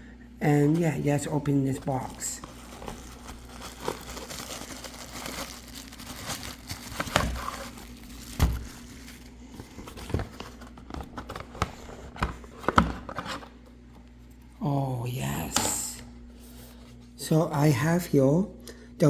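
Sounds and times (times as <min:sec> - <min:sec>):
packaging rustling and crinkling: 0:00.7 - 0:13.5.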